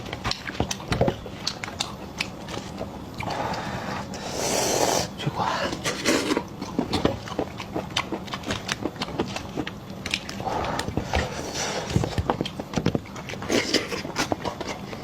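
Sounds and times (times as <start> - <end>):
wet chewing and lip smacks: 0.1 - 3.7, 6.4 - 11.3
breathy slurping hiss: 3.2 - 6.5.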